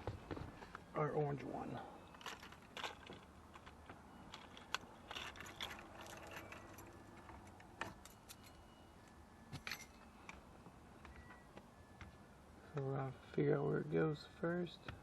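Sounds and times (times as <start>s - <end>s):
small hard parts clicking and rattling: 2.0s - 8.6s.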